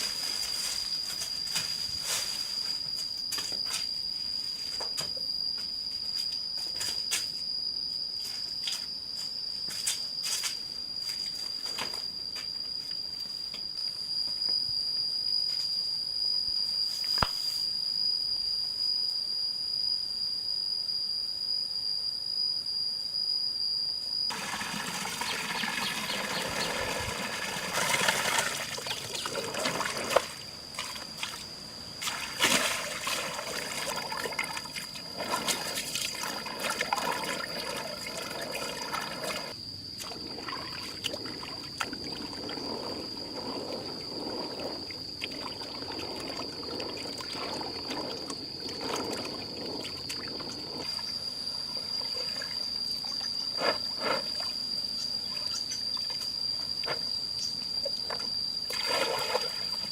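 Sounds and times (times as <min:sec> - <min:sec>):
high-pitched insect drone: 0:00.0 - 0:59.9
water trickling and splashing: 0:24.3 - 0:31.4, 0:32.0 - 0:51.1, 0:58.7 - 0:59.9.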